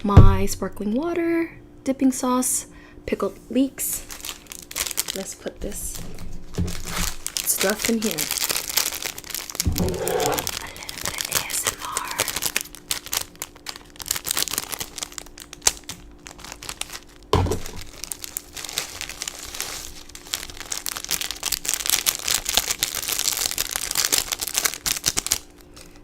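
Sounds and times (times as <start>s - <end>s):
plastic packets crinkling: 4.0s - 5.4s, 6.7s - 26.0s
dull thump: 9.7s - 10.1s.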